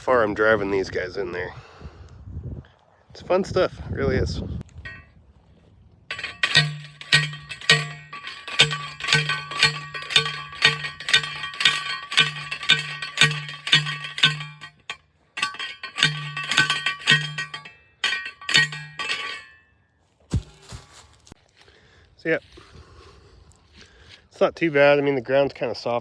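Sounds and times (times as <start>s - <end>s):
post driver hammering steel post: 4.8s - 5.1s, 6.1s - 19.6s.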